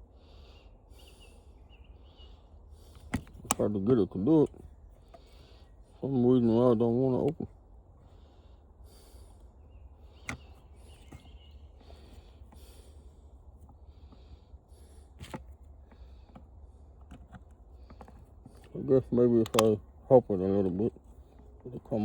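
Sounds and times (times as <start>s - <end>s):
low steady hum: 0.0s - 22.0s
hand tool handling noises: 2.8s - 5.6s, 10.1s - 22.0s
sharp clicks: 19.4s - 19.8s.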